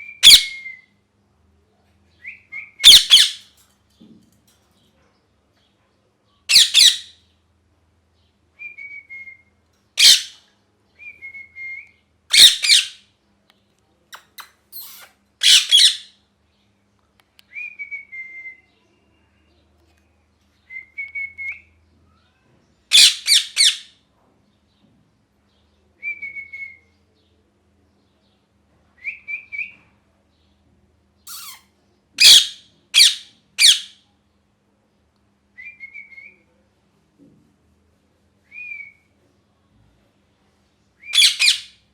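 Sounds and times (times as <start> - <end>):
parrot screeching: 2.8 - 3.5, 6.5 - 7.1, 10.0 - 10.4, 12.3 - 13.0, 14.3 - 16.1, 22.9 - 23.9, 31.3 - 31.6, 32.2 - 34.0, 41.2 - 41.7.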